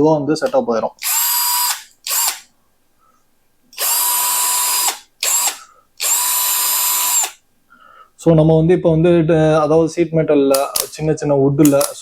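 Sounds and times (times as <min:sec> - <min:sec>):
cordless drill whining: 0:01.0 - 0:02.5, 0:03.8 - 0:07.4.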